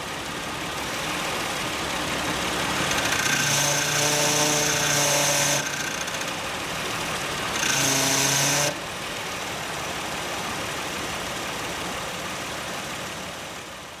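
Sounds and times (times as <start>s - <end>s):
engine idling: 0.0s - 3.8s, 4.6s - 7.6s, 8.8s - 14.0s
power steering pump groan: 2.4s - 6.7s.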